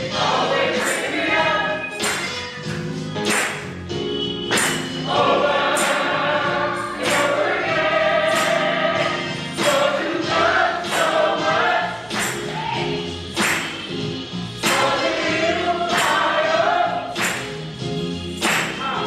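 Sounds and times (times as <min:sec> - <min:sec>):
choir singing gospel: 0:00.0 - 0:03.2, 0:04.2 - 0:19.0
sharp percussive hits: 0:04.5 - 0:06.2, 0:07.0 - 0:07.5, 0:14.6 - 0:16.3.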